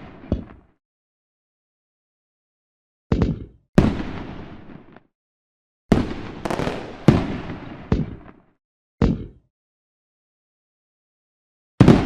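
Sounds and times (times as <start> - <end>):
fireworks bursting in sharp bangs: 0.0 - 0.7, 3.8 - 5.1, 5.9 - 8.5, 11.8 - 12.0.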